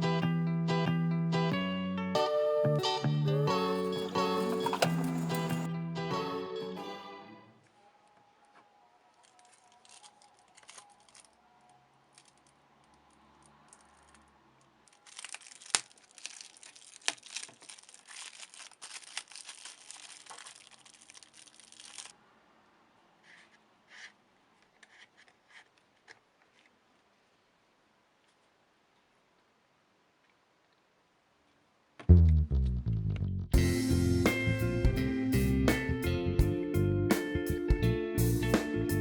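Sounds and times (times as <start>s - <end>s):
crinkling and rustling: 3.6s - 5.7s, 7.6s - 22.2s, 23.2s - 27.6s.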